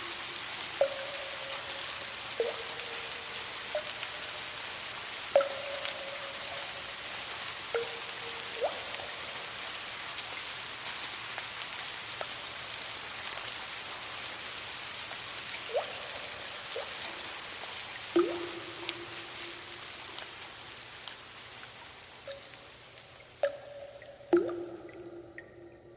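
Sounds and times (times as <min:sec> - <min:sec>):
soft rain patter: 0:00.0 - 0:25.8
water drops plinking: 0:00.7 - 0:04.5, 0:05.3 - 0:07.0, 0:07.7 - 0:09.6, 0:15.7 - 0:17.2, 0:18.1 - 0:20.4, 0:22.3 - 0:25.9.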